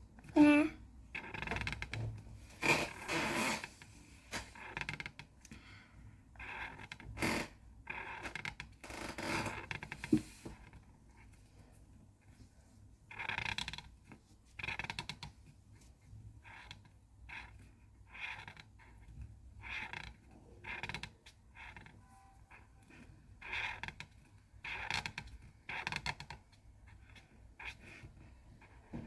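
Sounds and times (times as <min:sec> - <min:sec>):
colouring tool scratching on paper: 0:13.1 - 0:29.0.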